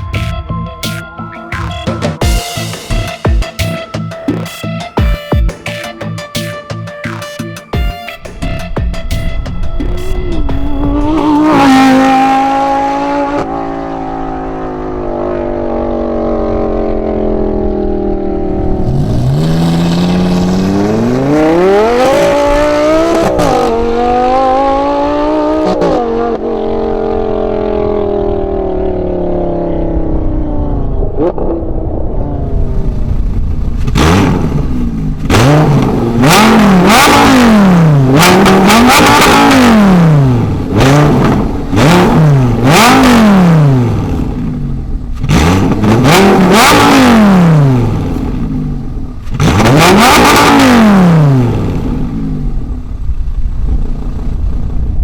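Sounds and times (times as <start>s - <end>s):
loud sports car engine revving: 10.9s - 32.8s, 33.8s - 53.0s.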